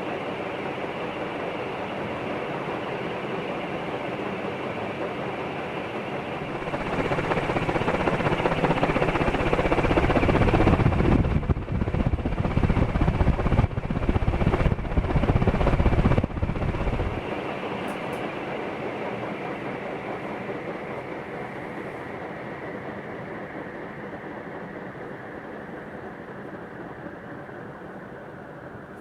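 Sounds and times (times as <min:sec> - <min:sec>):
ceiling fan running: 0:00.0 - 0:29.0
uneven low rumble: 0:06.4 - 0:17.2.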